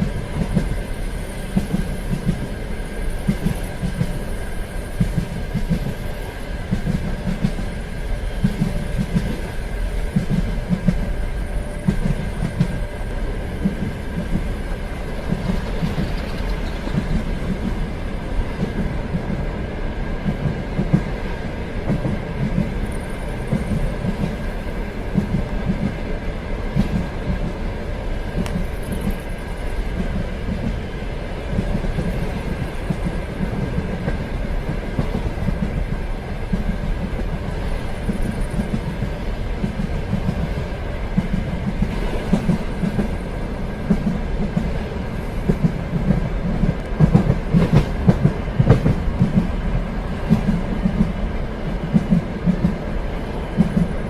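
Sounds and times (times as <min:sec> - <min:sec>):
train rumbling on rails: 0:00.0 - 0:54.0.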